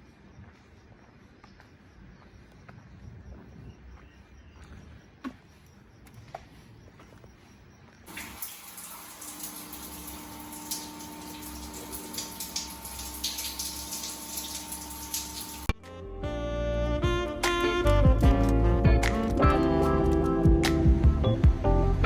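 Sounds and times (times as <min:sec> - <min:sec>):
running water splashing: 0:08.1 - 0:15.7.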